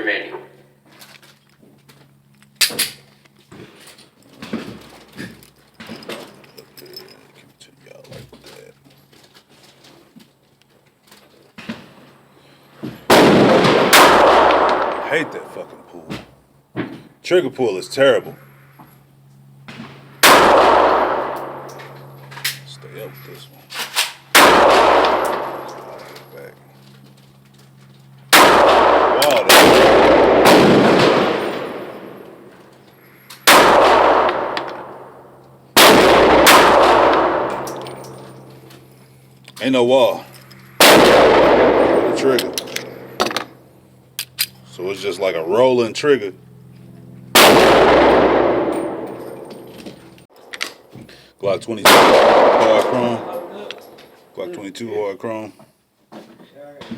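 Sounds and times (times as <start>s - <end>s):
gunshot ringing: 13.1s - 15.8s, 19.8s - 22.1s, 24.3s - 26.4s, 28.3s - 32.5s, 33.4s - 35.2s, 35.8s - 38.4s, 40.8s - 43.4s, 47.3s - 49.7s, 51.8s - 53.9s.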